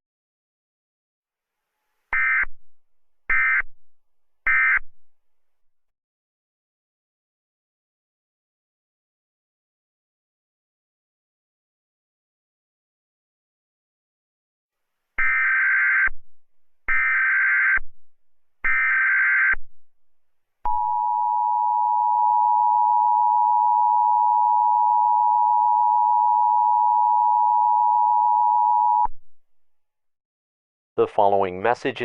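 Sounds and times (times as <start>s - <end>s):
data tone bursts: 20.7s - 29.1s
two-tone attention signal: 20.7s - 29.1s.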